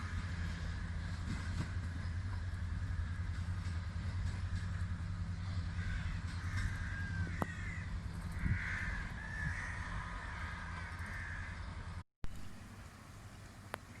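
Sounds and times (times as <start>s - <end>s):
train rumble: 0.0s - 14.0s
crows cawing: 5.6s - 11.7s.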